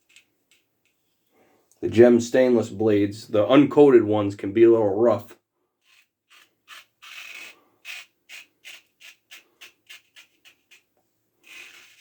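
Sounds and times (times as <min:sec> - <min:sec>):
razor scraping through stubble: 0:05.8 - 0:12.0.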